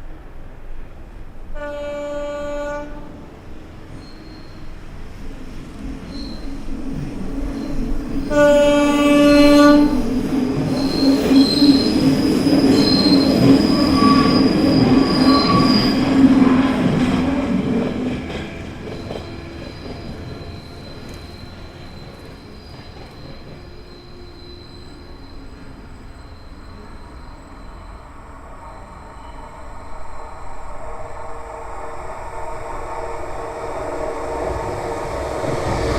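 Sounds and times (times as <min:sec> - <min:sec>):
train passing: 0:00.0 - 0:35.9
train horn blast: 0:01.5 - 0:03.3, 0:08.2 - 0:10.1
wheel squeal: 0:04.0 - 0:04.7, 0:06.1 - 0:06.6, 0:10.7 - 0:16.6, 0:18.8 - 0:30.6.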